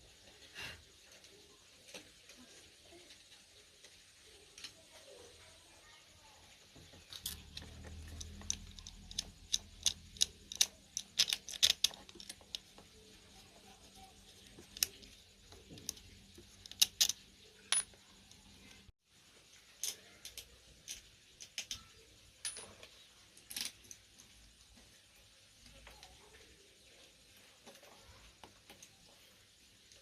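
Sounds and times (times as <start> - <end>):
metal parts and tools clinking: 6.8 - 18.9, 19.7 - 24.3.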